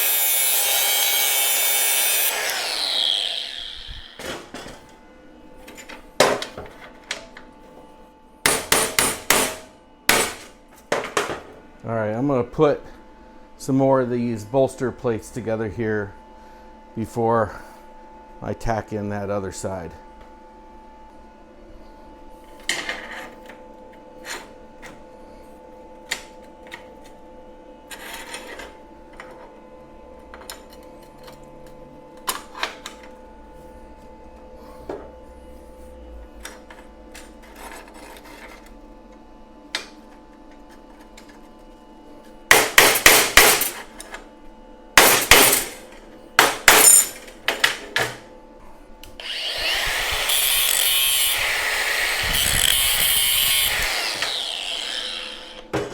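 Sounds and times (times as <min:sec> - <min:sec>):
steel parts clinking: 0:46.7 - 0:47.3.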